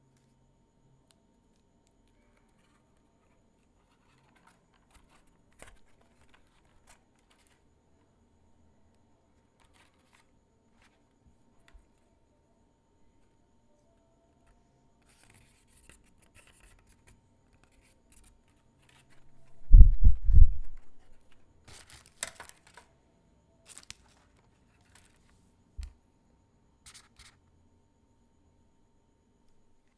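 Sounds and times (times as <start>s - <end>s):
sharp crinkles and clicks: 15.0s - 22.9s, 23.6s - 25.9s.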